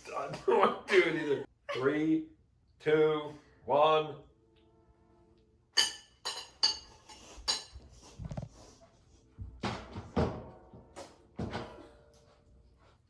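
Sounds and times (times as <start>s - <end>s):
spoons clinking on containers: 5.8s - 7.8s.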